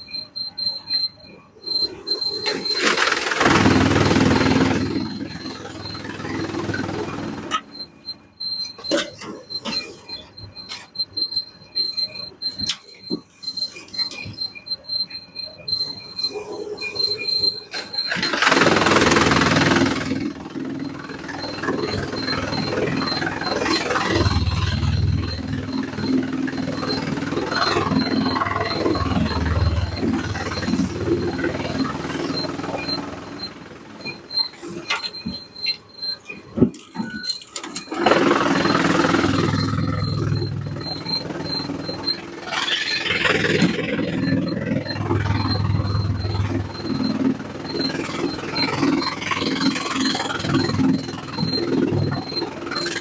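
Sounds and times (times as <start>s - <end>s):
sawmill machinery running: 1.7s - 7.8s, 15.7s - 36.2s, 37.4s - 53.0s.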